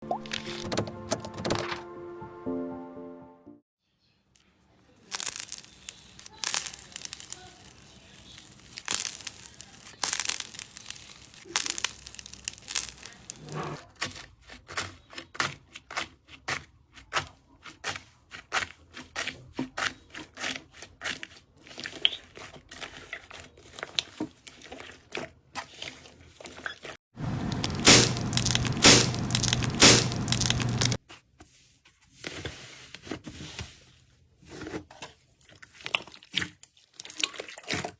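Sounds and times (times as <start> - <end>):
slime squishing and crackling: 5.0 - 13.8, 27.2 - 31.0, 35.4 - 37.9.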